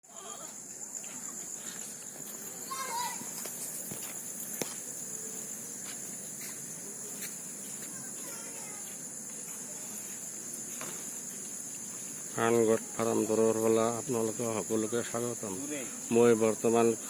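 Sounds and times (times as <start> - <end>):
high-pitched insect chorus: 0.0 - 17.0.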